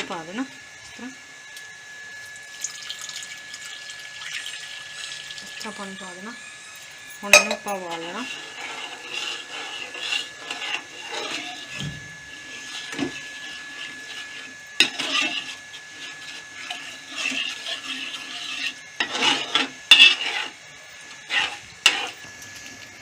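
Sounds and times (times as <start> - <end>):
spoon scraping a pan: 7.2 - 22.7
spoon knocking against pan: 7.3 - 7.7.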